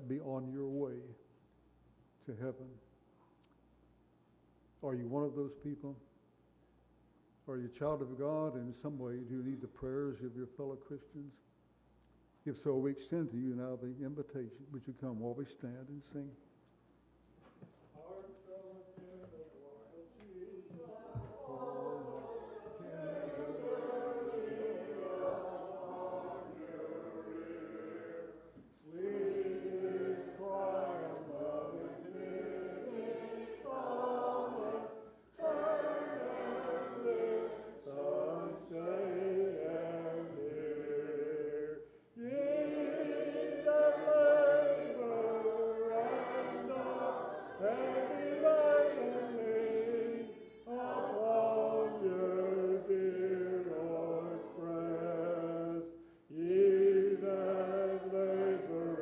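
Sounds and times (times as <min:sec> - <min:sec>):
congregation singing a hymn: 0:18.2 - 0:59.0.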